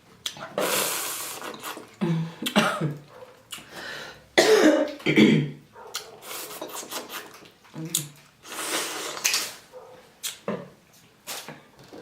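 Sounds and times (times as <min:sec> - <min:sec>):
woman coughing: 0:02.5 - 0:03.0, 0:04.4 - 0:05.6
woman clearing her throat: 0:04.4 - 0:05.6.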